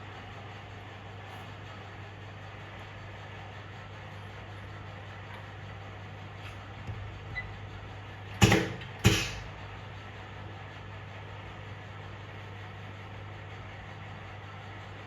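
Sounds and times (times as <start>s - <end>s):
steady low hum: 0.0s - 15.0s
sharp knocks: 8.4s - 9.5s.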